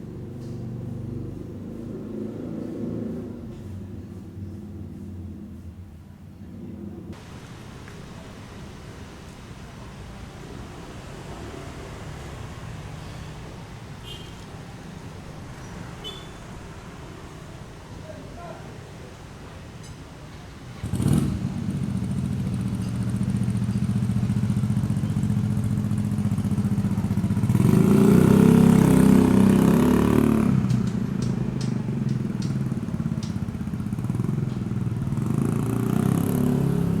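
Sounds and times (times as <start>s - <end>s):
sharp clicks: 30.6s - 33.5s.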